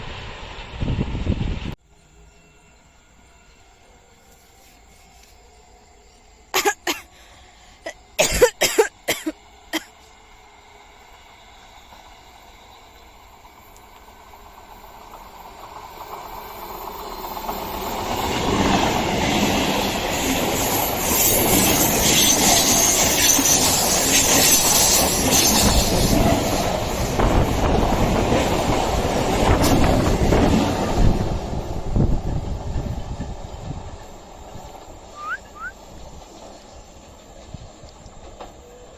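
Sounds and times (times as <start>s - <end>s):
train wheels rumbling on track: 7.8s - 38.9s.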